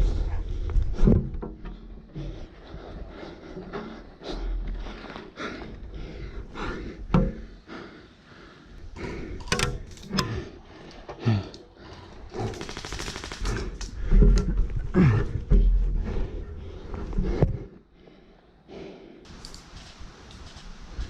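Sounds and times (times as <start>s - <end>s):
airsoft gun full-auto burst: 12.5s - 13.6s.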